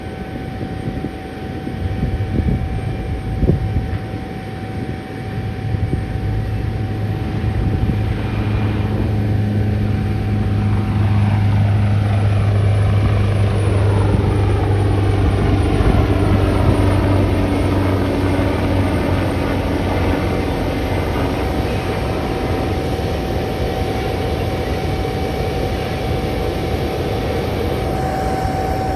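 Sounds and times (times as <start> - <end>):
helicopter rotor beat: 0.0 - 28.9
steady high whine: 0.0 - 28.9.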